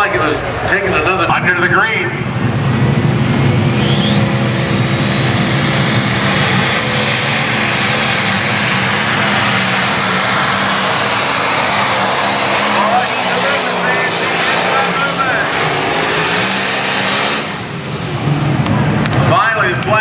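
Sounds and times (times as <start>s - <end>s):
diesel engine running flat out: 0.0s - 19.8s
high whistle: 3.7s - 5.1s.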